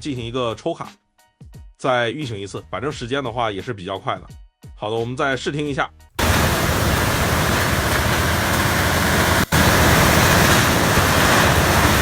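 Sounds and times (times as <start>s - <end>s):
storm wind rushing: 6.2s - 12.0s.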